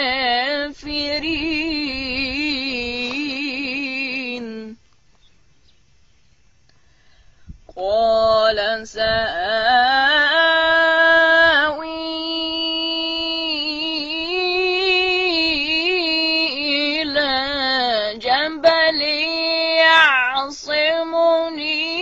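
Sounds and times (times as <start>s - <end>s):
boy reciting melodically: 7.7s - 22.0s.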